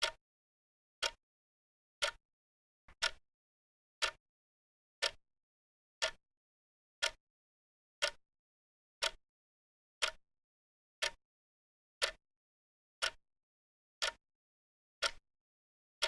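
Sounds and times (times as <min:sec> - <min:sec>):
clock ticking: 0:01.0 - 0:01.2, 0:02.0 - 0:02.2, 0:03.0 - 0:03.2, 0:06.0 - 0:06.2, 0:07.0 - 0:07.2, 0:09.0 - 0:09.2, 0:10.0 - 0:10.2, 0:11.0 - 0:11.2, 0:12.0 - 0:12.2, 0:13.0 - 0:13.2, 0:14.0 - 0:14.2.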